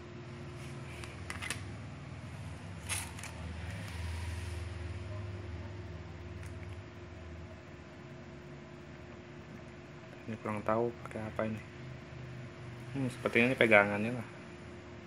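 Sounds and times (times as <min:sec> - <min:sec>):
steady low hum: 0:00.0 - 0:15.0
packaging rustle: 0:02.7 - 0:04.0.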